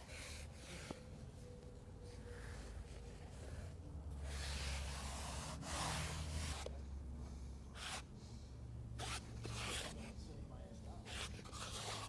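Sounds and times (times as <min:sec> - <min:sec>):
scraping and rubbing strokes: 0:04.2 - 0:06.7, 0:09.0 - 0:10.1, 0:11.0 - 0:12.0.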